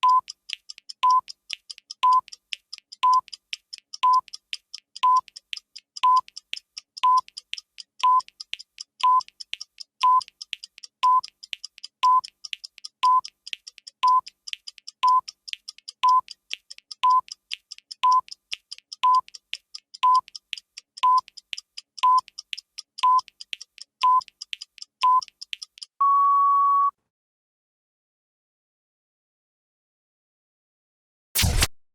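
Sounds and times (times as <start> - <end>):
fast clock ticking: 0.0 - 26.0
short electronic beeps: 31.4 - 31.7.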